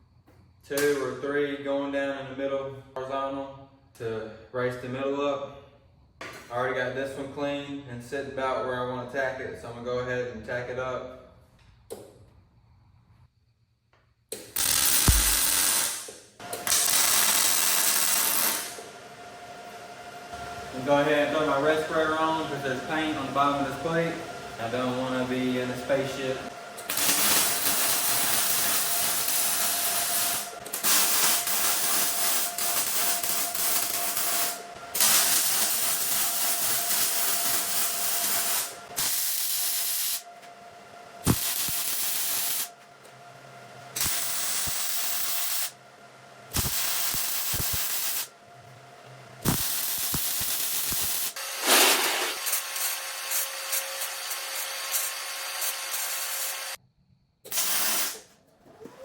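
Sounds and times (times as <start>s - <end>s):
arc welding crackling hiss: 14.4s - 19.0s, 19.8s - 40.3s, 41.2s - 42.8s, 43.9s - 45.8s, 46.5s - 48.3s, 49.4s - 56.8s, 57.5s - 58.3s.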